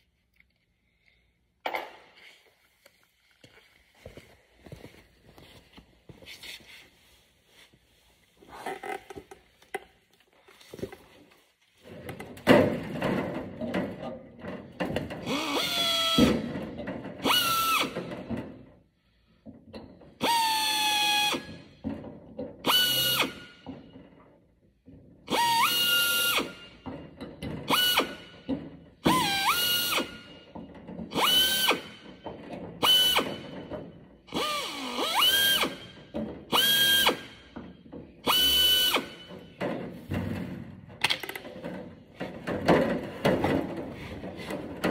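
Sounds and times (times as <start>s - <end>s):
power drill drilling rivets: 17.2s - 18.2s, 31.1s - 32.1s, 34.3s - 37.5s, 38.2s - 39.4s.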